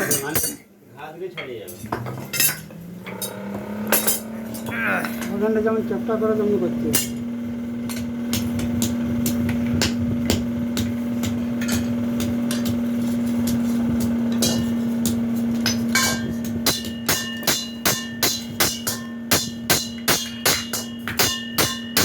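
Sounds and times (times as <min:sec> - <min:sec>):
steady low hum: 0:01.7 - 0:22.0
hammer blows on metal bowl: 0:06.9 - 0:22.0.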